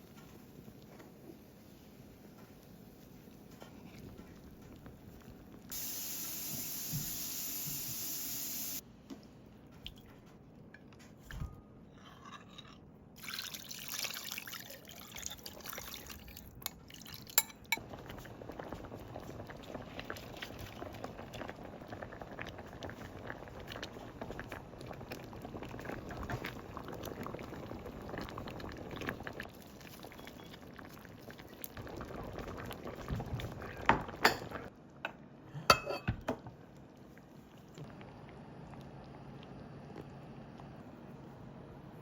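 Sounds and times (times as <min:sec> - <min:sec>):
pot simmering: 0:00.0 - 0:08.8, 0:13.2 - 0:42.0
water running: 0:03.9 - 0:08.8.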